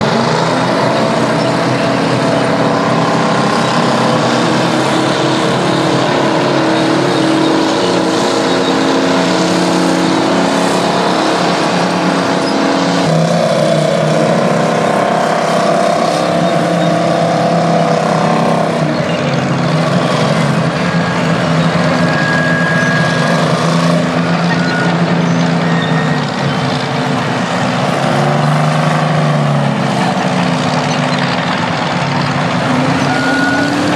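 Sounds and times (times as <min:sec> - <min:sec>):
bulldozer diesel engines running: 0:00.0 - 0:33.9.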